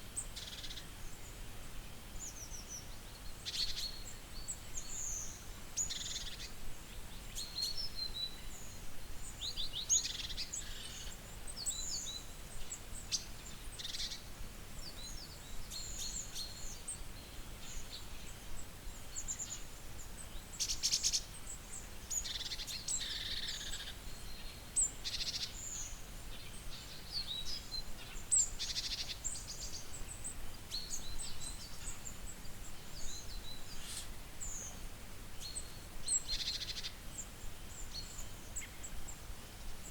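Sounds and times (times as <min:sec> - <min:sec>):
wild birds chirping: 0:20.4 - 0:39.9.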